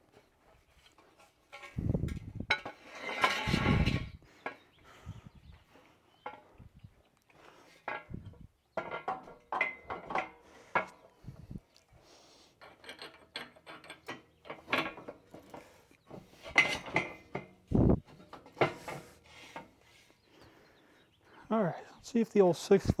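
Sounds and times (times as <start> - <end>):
metal tools knocking and scraping: 0.5 - 4.7, 6.2 - 6.6, 7.8 - 11.1, 12.6 - 20.0.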